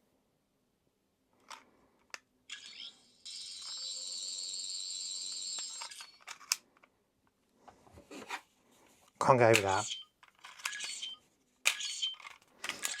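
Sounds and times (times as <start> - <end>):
toy electronic warbling buzz: 2.5 - 6.2.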